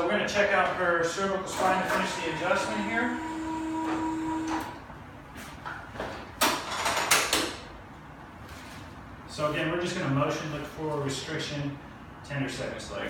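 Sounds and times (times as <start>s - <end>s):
steady low hum: 0.0s - 6.4s.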